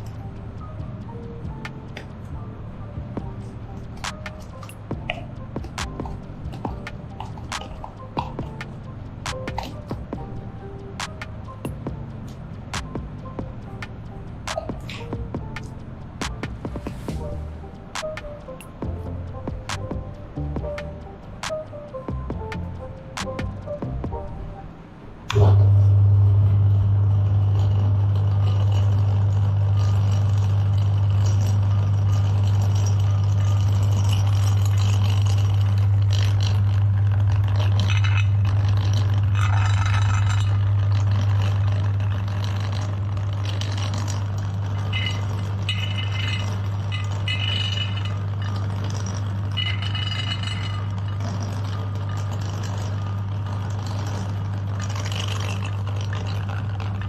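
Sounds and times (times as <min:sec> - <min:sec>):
meat grinder motor hum: 0:25.4 - 0:57.0
grinder rattling and clinking: 0:26.8 - 0:57.0.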